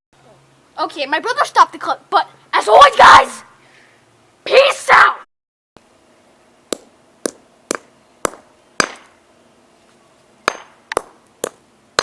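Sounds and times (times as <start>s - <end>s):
hammer strikes: 6.7s - 9.1s, 10.5s - 12.0s.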